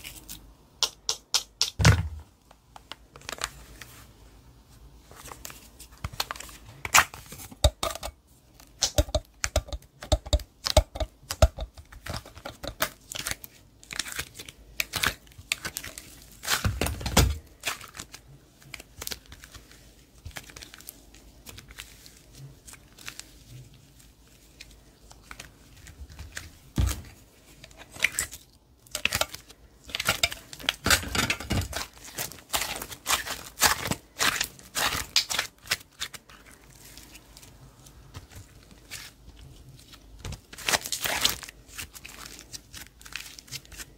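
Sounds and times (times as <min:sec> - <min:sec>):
slime squishing and crackling: 0:08.6 - 0:43.9.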